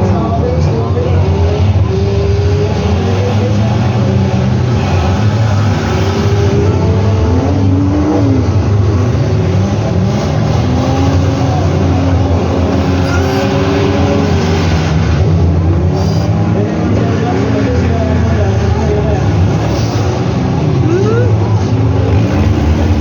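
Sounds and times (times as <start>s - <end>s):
car engines revving: 0.0s - 23.0s.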